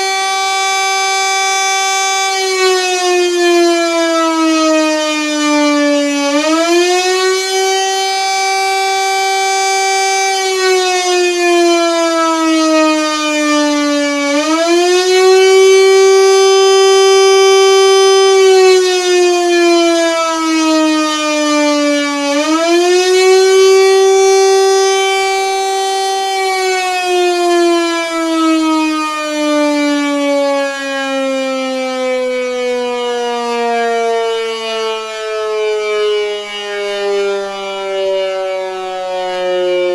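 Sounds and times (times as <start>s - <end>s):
air-raid siren wailing: 0.0s - 39.9s.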